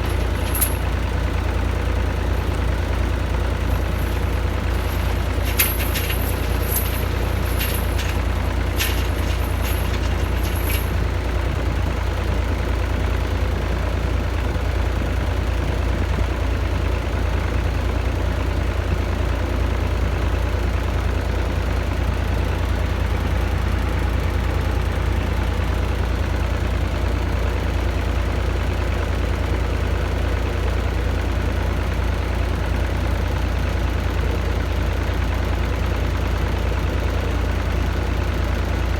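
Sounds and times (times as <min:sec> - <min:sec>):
diesel engine idling: 0:00.0 - 0:38.9
sharp metallic clicks: 0:03.6 - 0:11.0.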